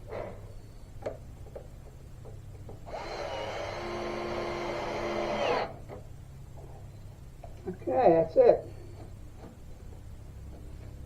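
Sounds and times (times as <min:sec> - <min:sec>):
cordless drill driving a screw: 0:02.9 - 0:05.7.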